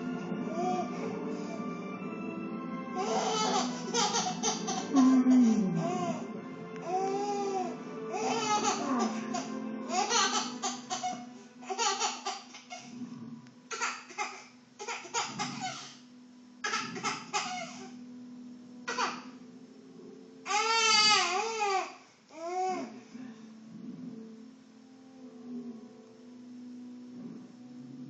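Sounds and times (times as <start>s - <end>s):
soft background music: 0.0s - 28.0s
baby laughing: 3.0s - 12.9s, 13.7s - 16.0s, 16.6s - 18.0s, 18.9s - 19.4s.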